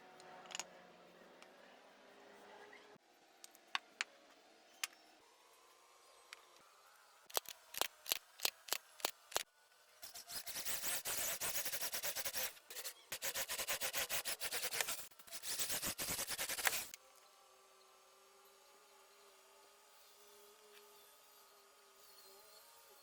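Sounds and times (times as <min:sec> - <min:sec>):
scraping strokes on wood: 0:10.1 - 0:17.0.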